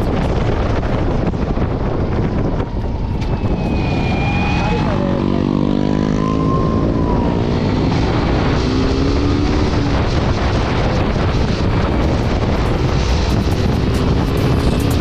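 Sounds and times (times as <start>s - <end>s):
wind rush on microphone: 0.0s - 15.0s
motorcycle engine running: 8.0s - 15.0s.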